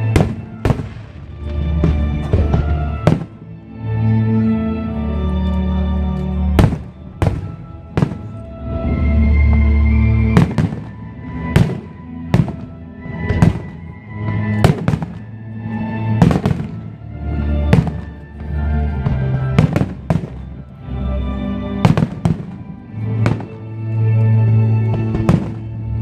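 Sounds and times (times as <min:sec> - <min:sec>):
fireworks booming: 0:00.0 - 0:03.5, 0:06.6 - 0:15.4, 0:16.1 - 0:20.6, 0:21.7 - 0:23.6, 0:24.9 - 0:26.0
music with long held notes: 0:00.0 - 0:26.0.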